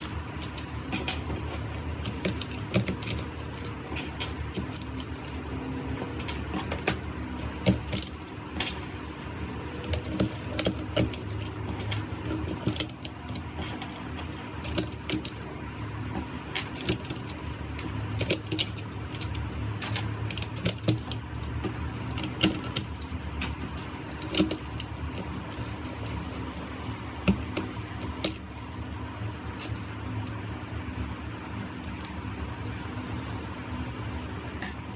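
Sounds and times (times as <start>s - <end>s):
keyboard typing clatter: 0.0s - 9.0s, 9.7s - 15.5s, 16.1s - 30.4s
steady low hum: 0.0s - 34.9s.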